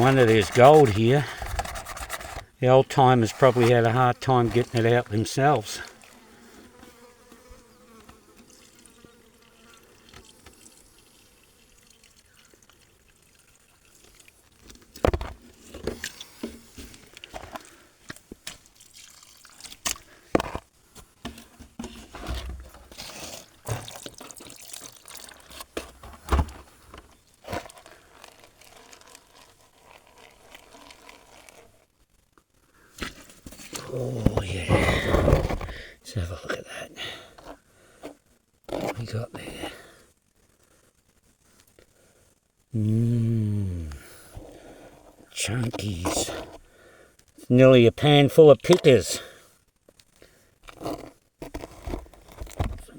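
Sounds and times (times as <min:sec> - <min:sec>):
water sloshing and splashing in pan: 0:18.4 - 0:20.0, 0:23.6 - 0:25.6.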